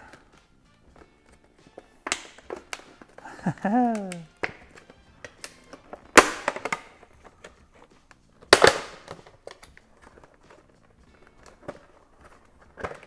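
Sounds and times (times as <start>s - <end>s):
plastic blister pack cut open: 2.1s - 7.6s, 8.4s - 10.2s.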